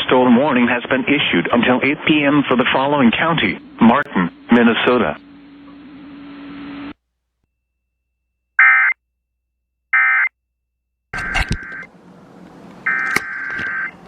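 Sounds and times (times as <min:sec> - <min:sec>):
static: 0:00.0 - 0:07.0.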